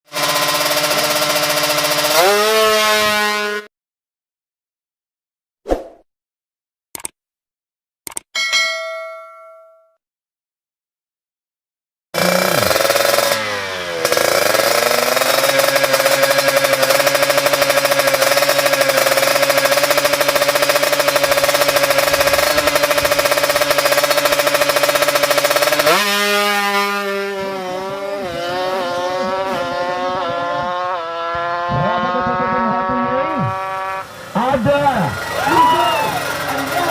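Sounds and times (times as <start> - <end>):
two-stroke motorcycle engines revving: 0.1 - 3.7, 12.2 - 36.9.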